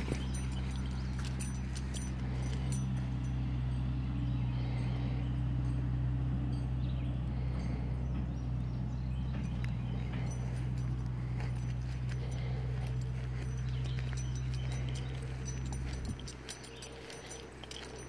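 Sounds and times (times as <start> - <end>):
pigs snoring: 0.0 - 3.4.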